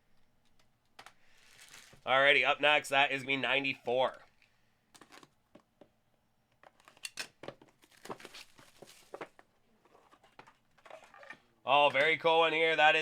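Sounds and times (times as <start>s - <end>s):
packaging crinkling and rustling: 1.3s - 2.0s, 6.7s - 9.5s.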